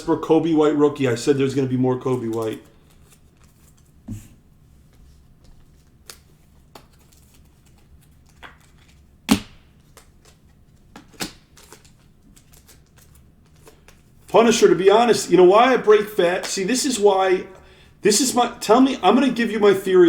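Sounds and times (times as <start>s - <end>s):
plastic cards clicking and tapping: 5.4s - 14.0s
card knocking: 9.3s - 9.8s.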